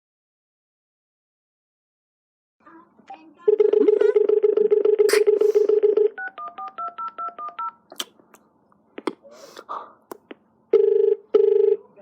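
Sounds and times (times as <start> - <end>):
phone dial tone: 3.5 - 7.8, 10.8 - 11.9
touch-tone keypad beeps: 3.5 - 7.8
phone clicks: 5.0 - 7.8.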